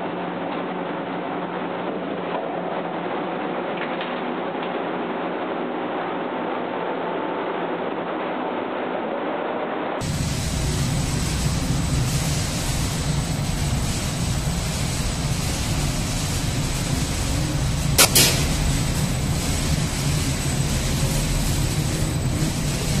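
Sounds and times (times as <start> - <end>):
sterilization machine humming: 10.0 - 23.0.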